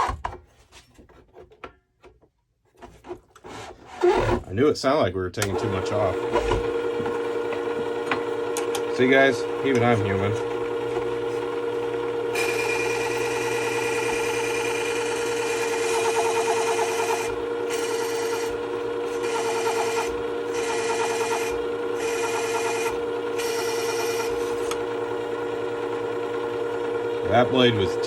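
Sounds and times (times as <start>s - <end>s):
sharpener motor running: 5.4s - 28.0s.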